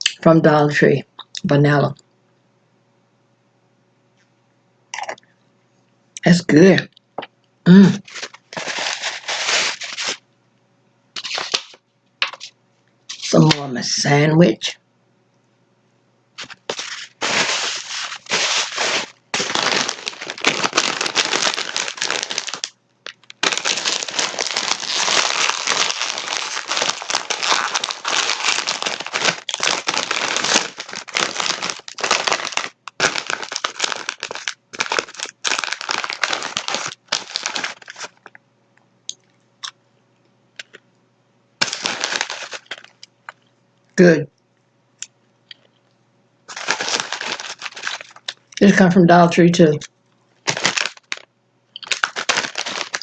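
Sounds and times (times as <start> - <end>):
plastic packaging crinkling: 8.0 - 10.2, 11.2 - 12.5, 13.1 - 13.7, 16.4 - 38.4, 40.6 - 40.8, 41.6 - 43.5, 46.5 - 48.8, 49.8 - 53.0.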